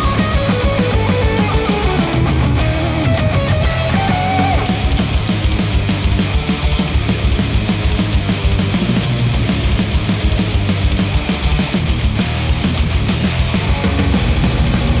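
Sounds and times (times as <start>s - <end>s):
heavy rock music through headphones: 0.0s - 15.0s.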